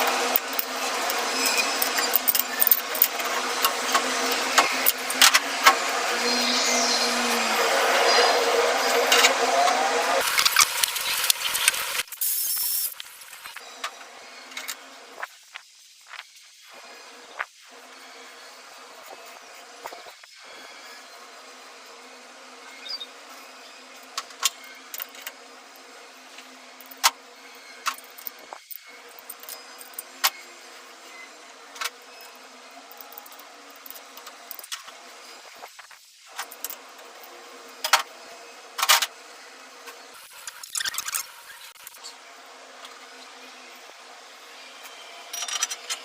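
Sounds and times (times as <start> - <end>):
metal tools clinking: 0.3 - 3.3.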